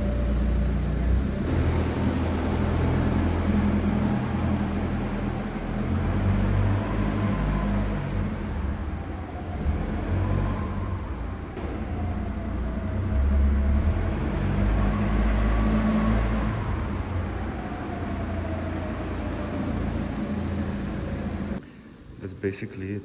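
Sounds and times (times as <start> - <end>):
car engine and road rumble: 0.0 - 21.6
faint whines rising and falling: 10.2 - 22.4.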